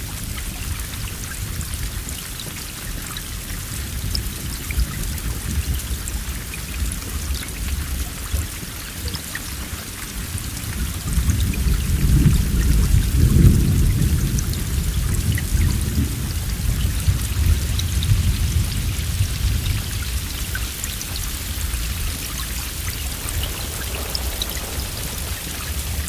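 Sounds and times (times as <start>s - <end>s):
heavy rain hissing: 0.0s - 26.0s
raindrop ticks: 0.0s - 26.0s
low roll of thunder: 10.2s - 26.0s.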